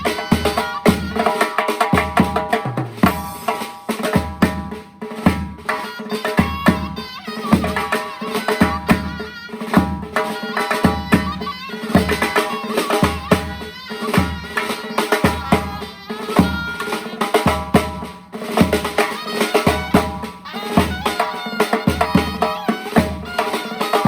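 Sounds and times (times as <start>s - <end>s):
steady drum beat: 0.0s - 24.0s
shawm playing folk melody: 5.2s - 24.0s.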